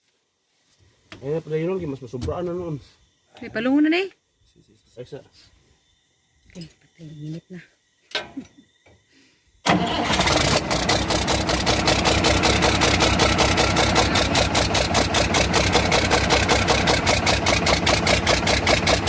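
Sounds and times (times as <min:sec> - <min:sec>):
diesel engine idling: 0:09.7 - 0:19.0
engine knocking: 0:10.0 - 0:19.0.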